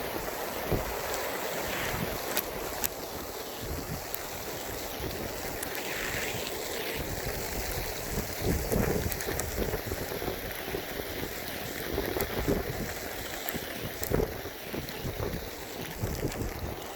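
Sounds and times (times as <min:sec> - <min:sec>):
rain falling: 0:00.0 - 0:16.9
wind buffeting microphone: 0:00.0 - 0:16.9.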